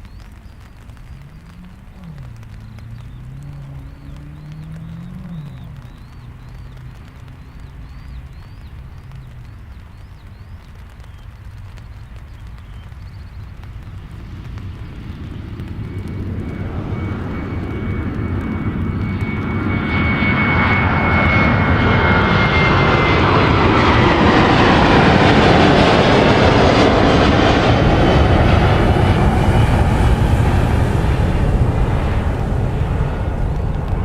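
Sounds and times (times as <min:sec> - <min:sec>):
airliner engines roaring: 0:00.0 - 0:34.0
high engine whine: 0:00.0 - 0:34.0.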